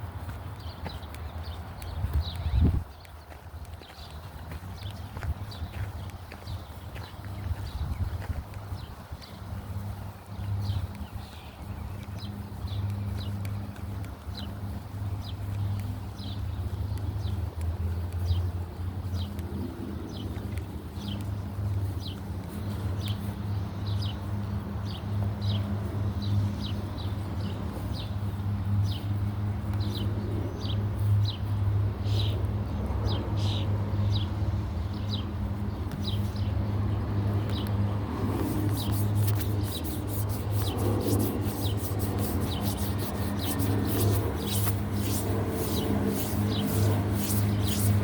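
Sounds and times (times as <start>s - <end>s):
low mechanical hum: 0.0s - 48.0s
rapid high clicking: 38.5s - 48.0s.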